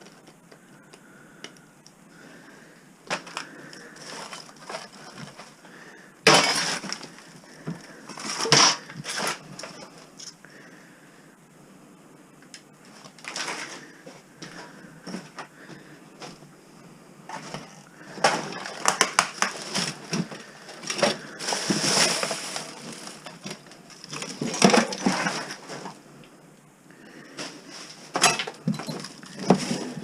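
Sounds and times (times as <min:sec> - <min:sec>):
objects knocking and clattering: 0:17.3 - 0:25.9, 0:28.1 - 0:30.0.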